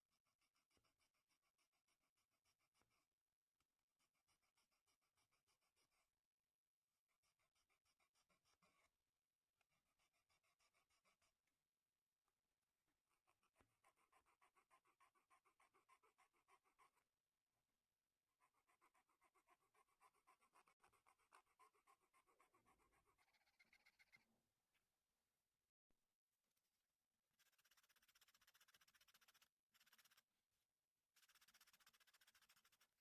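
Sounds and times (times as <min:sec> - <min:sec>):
scratching strokes on paper: 0:31.2 - 0:33.0.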